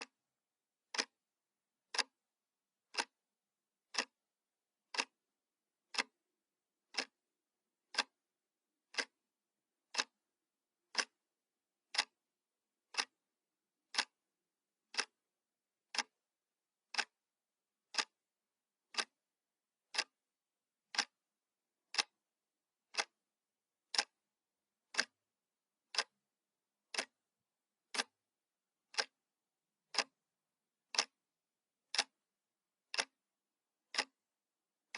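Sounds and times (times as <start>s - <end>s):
clock ticking: 0.9s - 1.2s, 1.9s - 2.2s, 2.9s - 3.2s, 3.9s - 4.2s, 4.9s - 5.2s, 5.9s - 6.2s, 6.8s - 7.2s, 7.9s - 8.2s, 8.8s - 9.2s, 9.9s - 10.2s, 10.9s - 11.2s, 11.9s - 12.2s, 12.8s - 13.2s, 13.9s - 14.2s, 14.9s - 15.2s, 15.9s - 16.2s, 16.9s - 17.2s, 17.9s - 18.2s, 18.9s - 19.2s, 19.9s - 20.2s, 20.9s - 21.2s, 21.9s - 22.2s, 22.9s - 23.2s, 23.8s - 24.2s, 24.9s - 25.2s, 25.9s - 26.2s, 26.8s - 27.3s, 27.9s - 28.2s, 28.9s - 29.2s, 29.9s - 30.2s, 30.9s - 31.2s, 31.9s - 32.2s, 32.9s - 33.2s, 33.9s - 34.3s.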